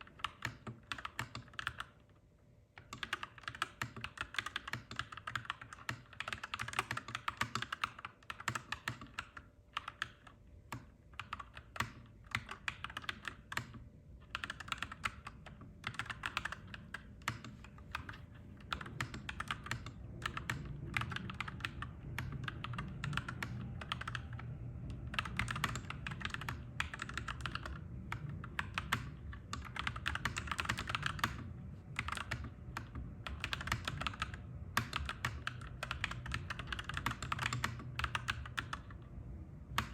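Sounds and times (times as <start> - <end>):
mechanical keyboard typing: 0.0 - 2.1, 2.8 - 39.1, 39.7 - 39.9.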